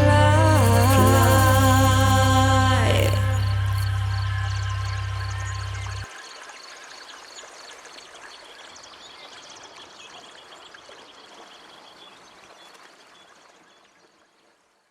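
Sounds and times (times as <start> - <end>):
steady hiss: 0.0 - 6.0.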